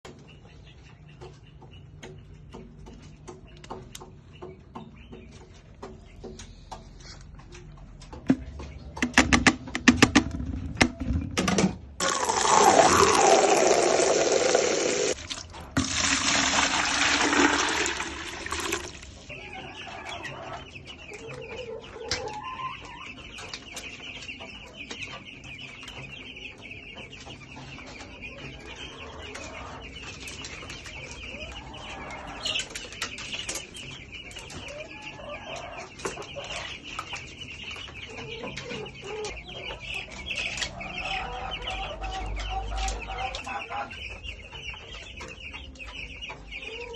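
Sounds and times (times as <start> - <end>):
chicks peeping: 0.0 - 46.9
clicks and knocks: 7.5 - 12.0.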